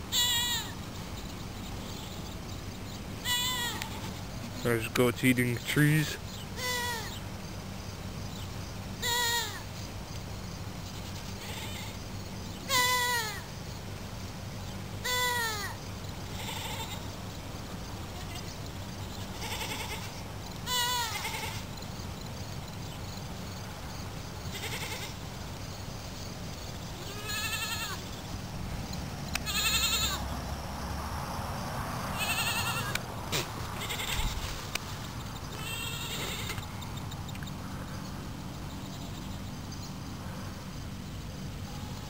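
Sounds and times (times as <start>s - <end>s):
steady low hum: 0.0s - 42.0s
goats bleating: 3.2s - 4.2s, 16.4s - 17.0s, 19.4s - 21.6s, 24.5s - 25.2s, 27.0s - 28.0s, 29.4s - 30.2s, 32.2s - 33.0s, 33.8s - 34.4s, 35.6s - 36.6s.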